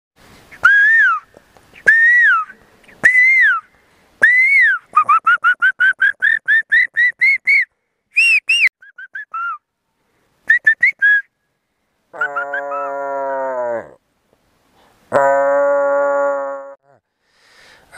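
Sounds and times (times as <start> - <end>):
man whistling birdcall: 0.5 - 9.7, 10.4 - 11.3.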